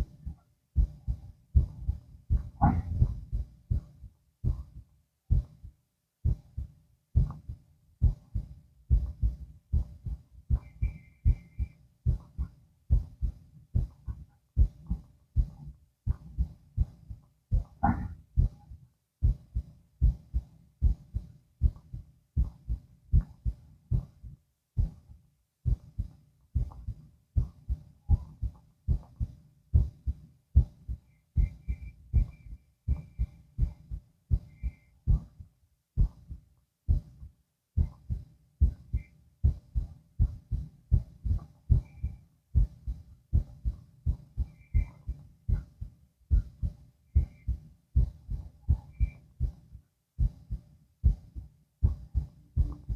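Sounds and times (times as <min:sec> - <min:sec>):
heartbeat through stethoscope: 0:00.0 - 0:52.9.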